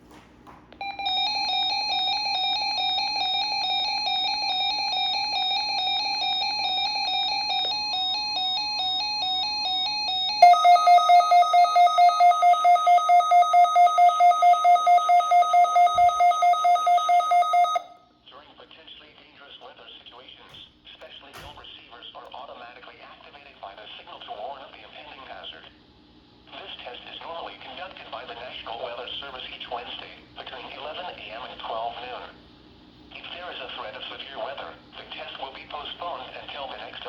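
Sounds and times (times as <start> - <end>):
warbling electronic alert tone: 0.8 - 17.9.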